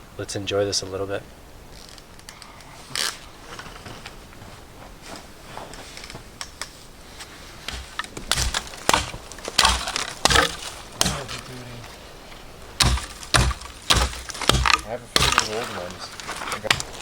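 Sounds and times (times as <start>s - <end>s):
firewood cracking and snapping: 7.6s - 17.0s.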